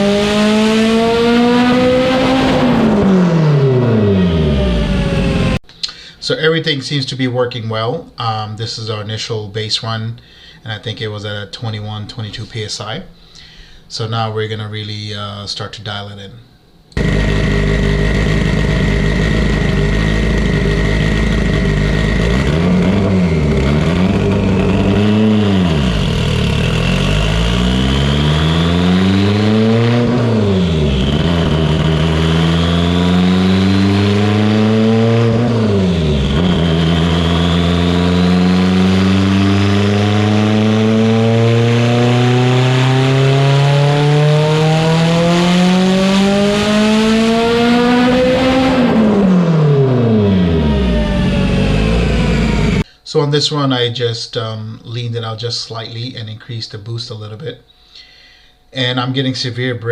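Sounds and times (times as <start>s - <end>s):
turbocharged car engine revving: 0.0s - 5.6s, 17.0s - 52.9s.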